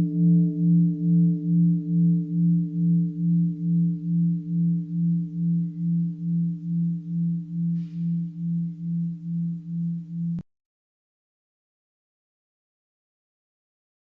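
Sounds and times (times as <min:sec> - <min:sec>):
bell ringing low tone: 0:00.0 - 0:10.4.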